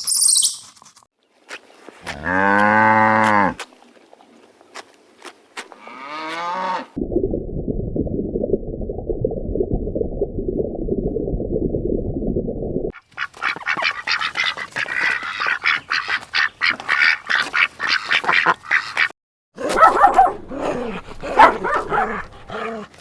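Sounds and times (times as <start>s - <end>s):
rapid chatter of animal calls: 13.0s - 19.0s.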